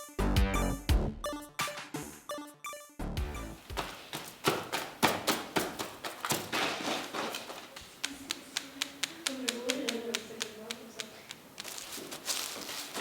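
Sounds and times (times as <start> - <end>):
sharp taps and knocks: 3.6 - 13.0.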